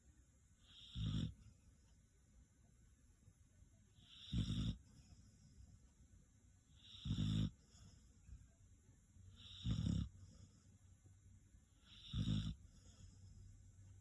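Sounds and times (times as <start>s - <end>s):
dog snoring: 0.6s - 1.8s, 4.0s - 5.7s, 6.7s - 8.2s, 9.3s - 10.7s, 11.7s - 13.6s.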